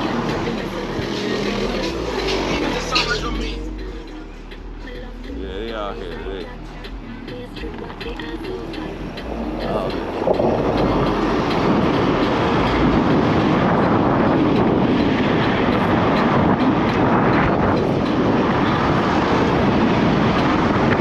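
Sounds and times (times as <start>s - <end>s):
wind and road rushing noise: 6.8s - 21.0s.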